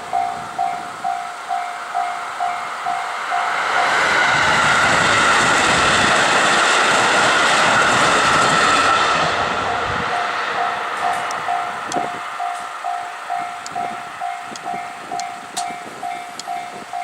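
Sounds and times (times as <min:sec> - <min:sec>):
level-crossing bell dinging: 0:00.0 - 0:03.9, 0:09.7 - 0:17.0
passing train rushing noise: 0:00.0 - 0:17.0.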